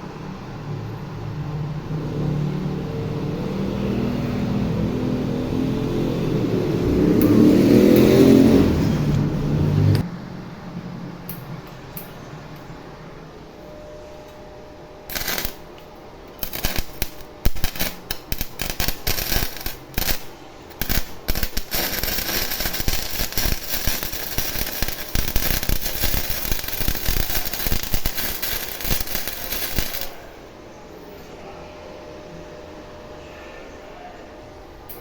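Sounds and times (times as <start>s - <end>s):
welding arc crackling: 15.1s - 30.3s.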